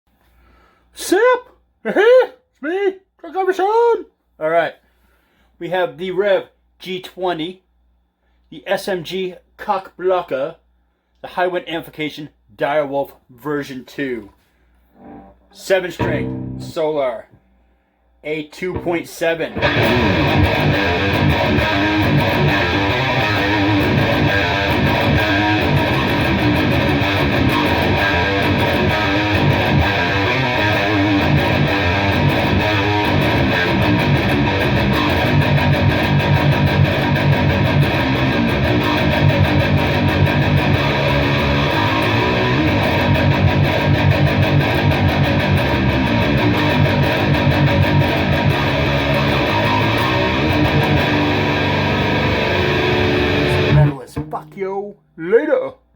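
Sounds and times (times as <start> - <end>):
distorted electric guitar metal riffs: 15.0 - 17.2, 18.7 - 54.0.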